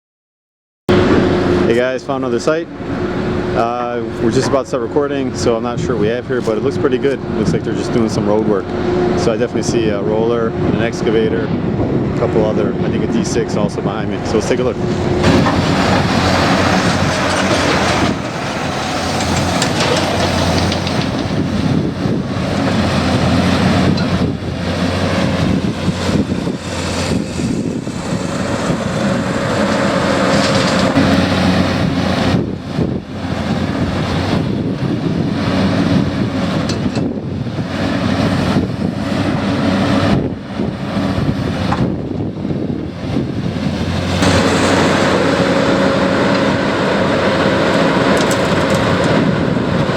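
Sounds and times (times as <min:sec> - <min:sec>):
diesel construction machinery running: 0:00.9 - 0:49.9.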